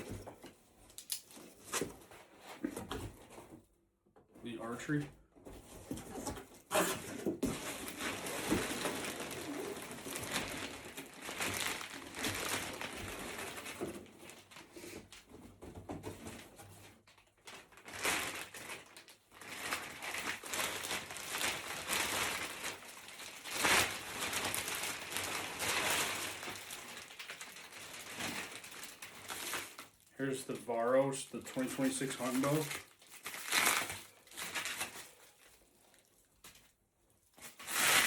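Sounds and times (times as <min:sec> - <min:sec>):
packaging rustling and crinkling: 0:05.6 - 0:15.2, 0:16.0 - 0:30.1, 0:31.5 - 0:38.0.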